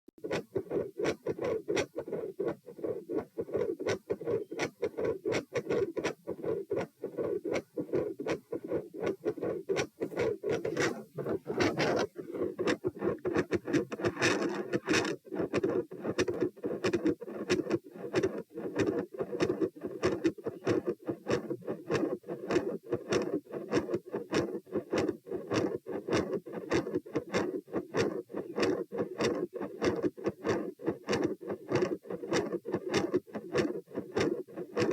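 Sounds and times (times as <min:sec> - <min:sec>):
heartbeat through stethoscope: 0:00.2 - 0:34.9
stethoscope rubbing noises: 0:00.2 - 0:34.9
heart murmur: 0:02.0 - 0:14.2.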